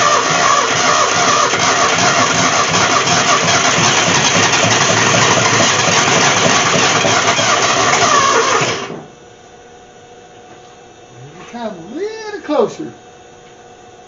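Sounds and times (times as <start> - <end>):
car engine running: 0.0 - 9.1.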